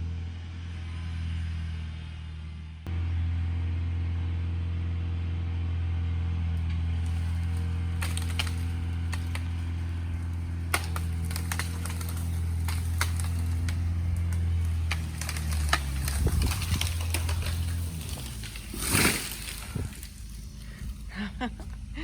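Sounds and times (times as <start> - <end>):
engine running: 0.0 - 22.0
wood cracking: 6.6 - 22.0
tree crashing down: 6.7 - 21.8.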